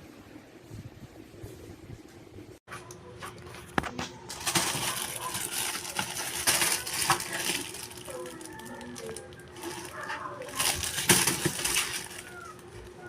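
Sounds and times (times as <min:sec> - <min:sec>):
plastic rustling: 0:03.2 - 0:13.0.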